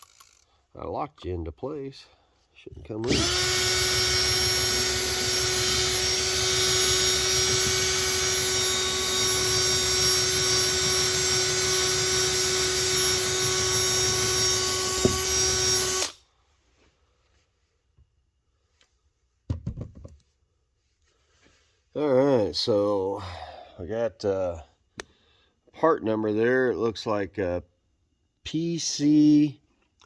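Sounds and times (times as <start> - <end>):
electric drill with wire brush: 3.0 - 16.2.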